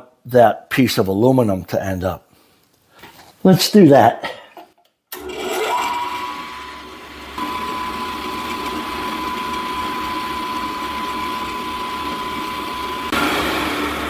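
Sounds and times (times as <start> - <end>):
milling machine motor whining: 5.2 - 14.0.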